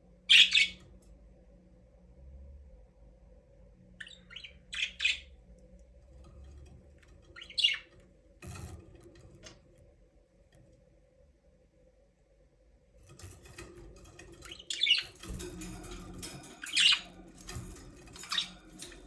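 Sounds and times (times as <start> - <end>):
budgerigars chirping and squawking: 0.3 - 0.8, 4.0 - 5.3, 7.3 - 7.9, 14.4 - 19.0.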